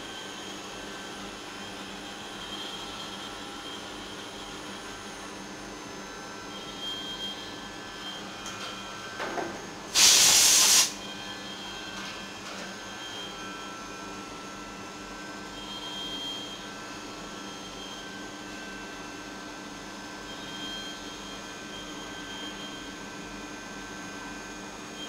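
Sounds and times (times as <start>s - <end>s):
compressed air hiss: 9.9s - 11.0s.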